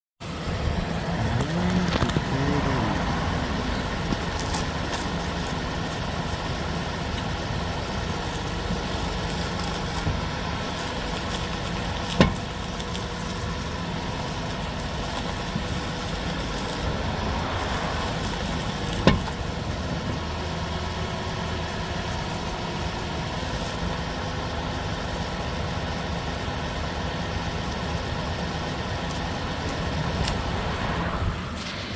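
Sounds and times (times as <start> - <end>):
car engine idling: 0.2 - 31.9
steering clunks: 0.4 - 24.5.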